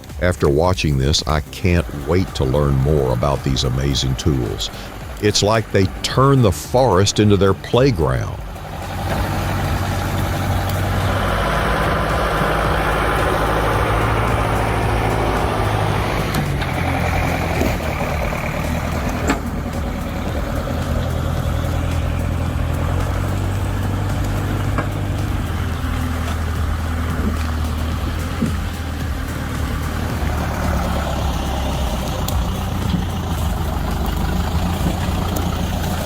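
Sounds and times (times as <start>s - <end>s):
large engine humming: 0.0s - 36.0s.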